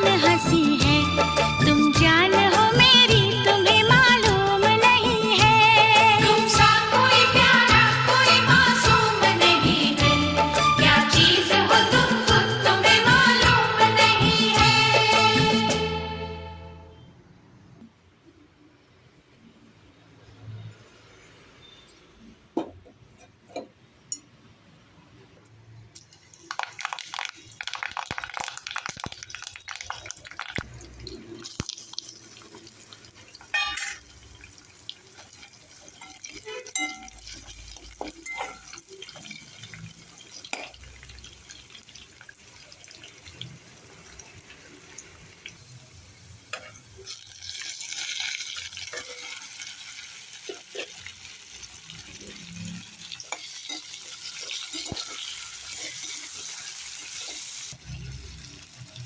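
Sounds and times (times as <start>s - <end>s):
knocks and clinks of utensils: 22.6s - 24.3s, 33.5s - 34.1s, 35.9s - 39.2s, 53.3s - 56.2s.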